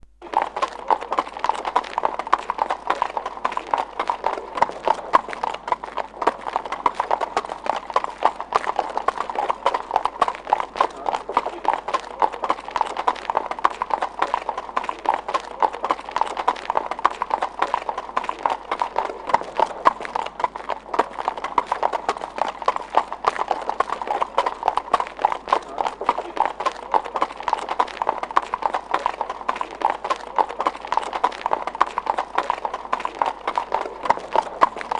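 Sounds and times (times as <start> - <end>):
horse hooves on pavement: 0.2 - 34.9.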